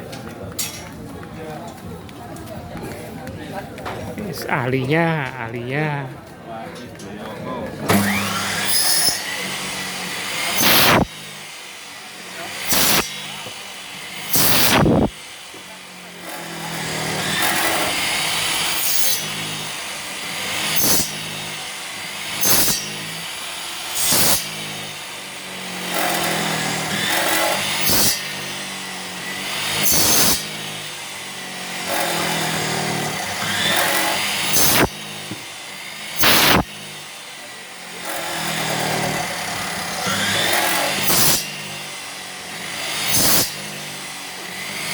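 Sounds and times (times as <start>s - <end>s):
crowd voices: 0.0s - 11.4s, 37.2s - 41.0s.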